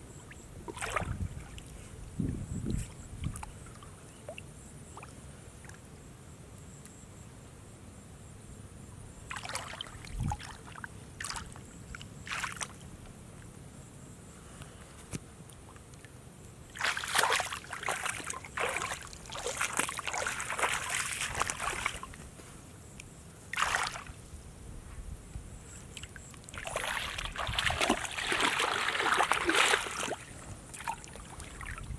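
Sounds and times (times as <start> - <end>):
water splashing and sloshing: 0.6 - 1.9, 9.3 - 12.8, 16.7 - 22.4, 23.5 - 24.2, 25.9 - 31.9.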